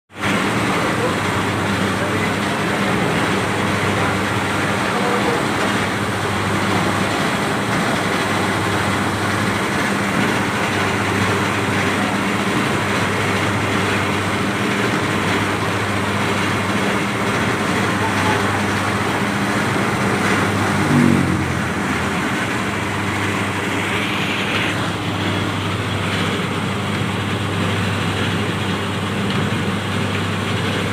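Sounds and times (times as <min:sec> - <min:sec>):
machine humming: 0:00.2 - 0:30.9
rising pitched sound: 0:20.5 - 0:22.6.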